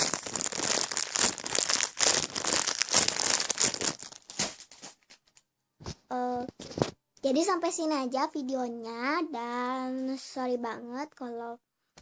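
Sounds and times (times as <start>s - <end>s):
squishy toy crinkling: 0.0s - 4.9s.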